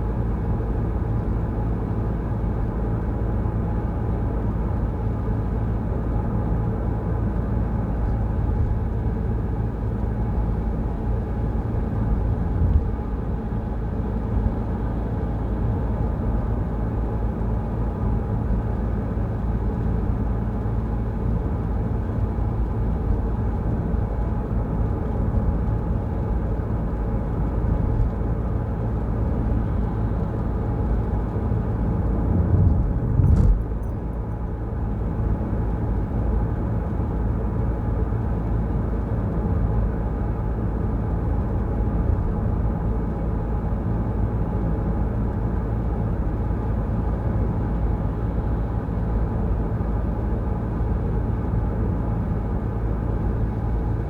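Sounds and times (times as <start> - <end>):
car driving on wet road: 32.1 - 33.8.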